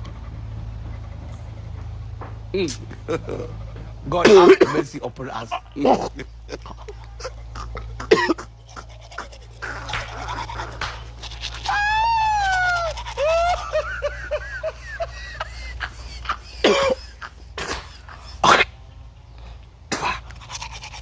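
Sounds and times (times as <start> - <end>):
wavering vocal noise: 2.5 - 18.8
person coughing: 4.2 - 5.0, 5.8 - 6.2, 6.8 - 8.5, 16.6 - 18.7, 19.9 - 20.3
short choked sounds: 5.9 - 13.5.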